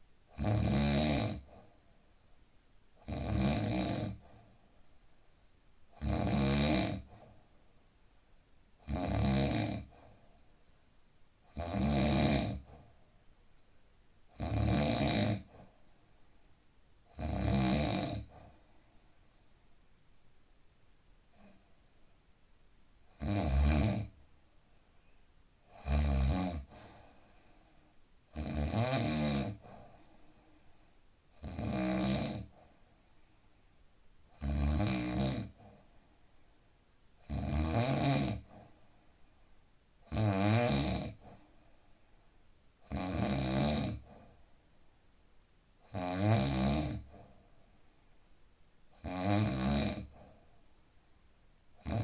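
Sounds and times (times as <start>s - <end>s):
man snoring: 0.4s - 1.6s, 3.0s - 4.2s, 6.0s - 7.2s, 8.8s - 10.0s, 11.5s - 12.7s, 14.4s - 15.6s, 17.1s - 18.4s, 23.2s - 24.1s, 25.7s - 26.7s, 28.3s - 29.7s, 31.4s - 32.5s, 34.4s - 35.6s, 37.2s - 38.6s, 40.1s - 41.3s, 42.9s - 44.2s, 45.9s - 47.2s, 49.0s - 50.2s, 51.8s - 52.0s.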